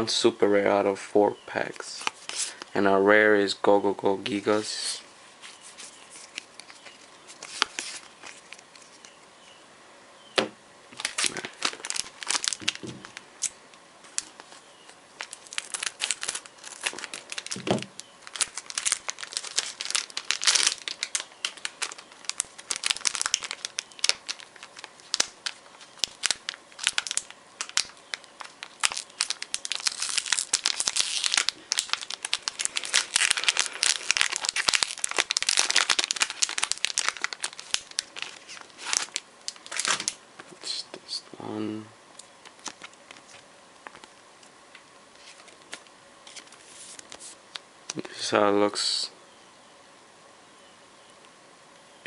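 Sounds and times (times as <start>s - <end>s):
plastic packaging crinkling and tearing: 1.7s - 2.7s, 5.4s - 9.2s, 10.9s - 40.6s, 42.2s - 47.6s.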